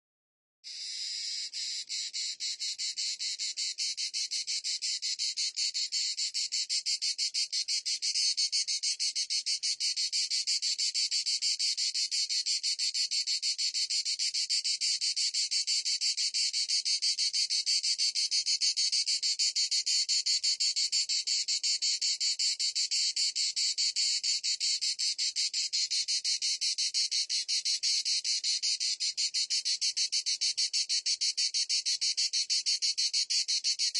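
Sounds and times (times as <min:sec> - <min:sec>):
cicada pulsing buzz: 0:00.7 - 0:14.4.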